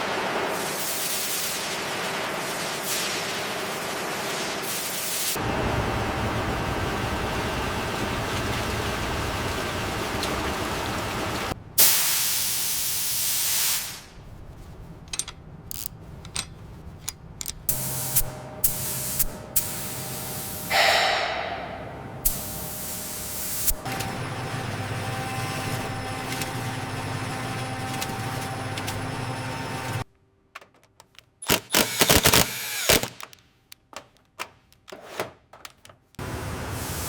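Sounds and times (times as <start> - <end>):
hissing noise: 17.7 - 23.8.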